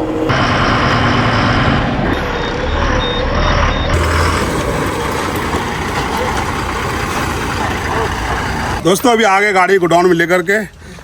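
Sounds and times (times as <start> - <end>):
truck engine rumbling: 0.0 - 11.0
reversing beeper beeping: 0.2 - 8.8.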